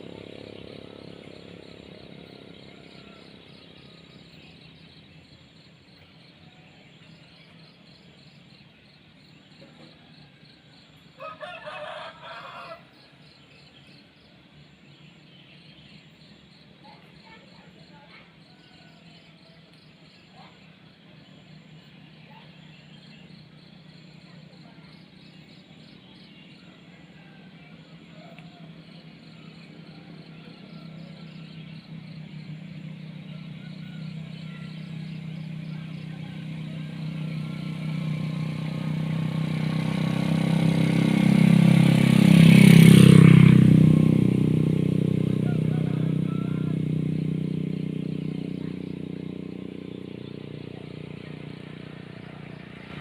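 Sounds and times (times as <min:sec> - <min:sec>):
motor vehicle passing by: 0:00.0 - 0:53.0.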